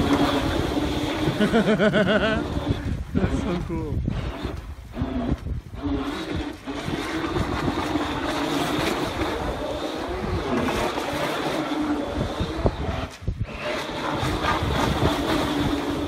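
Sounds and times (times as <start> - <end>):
toy boat motor humming: 0.0 - 16.0
wind rumbling on microphone: 0.0 - 16.0.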